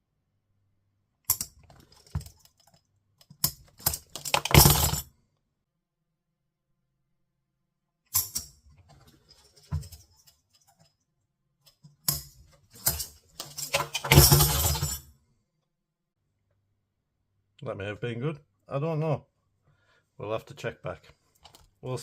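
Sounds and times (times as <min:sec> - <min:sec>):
handcuffs clicking and rattling: 0:01.3 - 0:05.0, 0:11.7 - 0:14.6.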